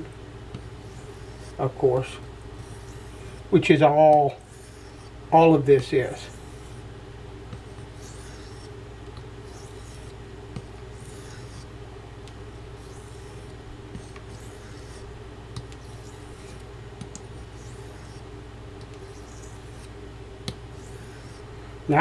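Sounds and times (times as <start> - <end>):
steady low hum: 0.0 - 22.0
knife blade scraping on whetstone: 0.8 - 3.5, 4.4 - 5.2, 7.9 - 8.7, 9.5 - 11.7, 12.8 - 15.1, 15.7 - 16.6, 17.4 - 18.2, 18.8 - 19.9, 20.7 - 21.4.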